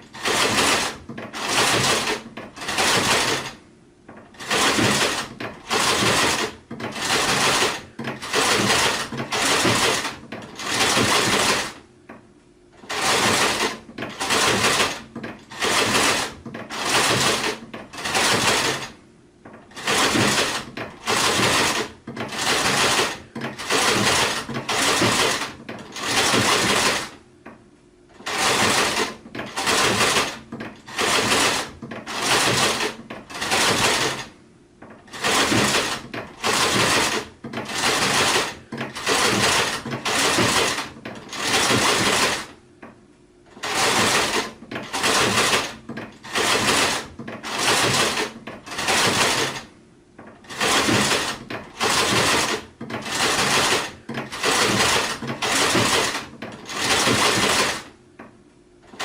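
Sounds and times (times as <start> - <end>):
sewing machine stitching: 0.0 - 11.9, 12.8 - 27.2, 28.1 - 42.6, 43.5 - 58.0.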